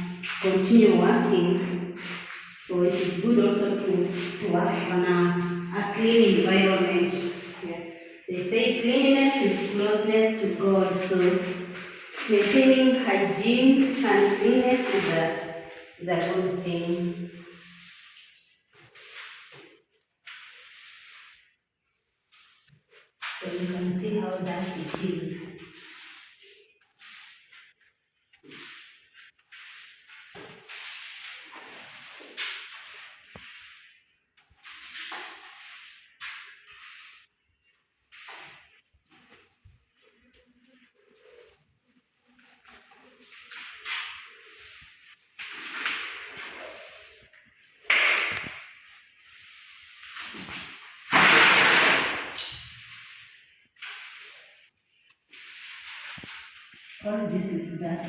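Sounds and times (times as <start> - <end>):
broom sweeping floor: 0.0 - 58.0.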